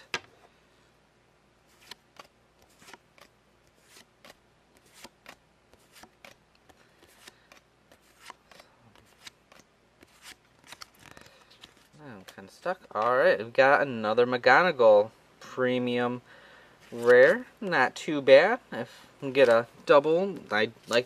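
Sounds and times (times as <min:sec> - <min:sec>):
trading cards snapping and sliding: 0:01.7 - 0:13.1.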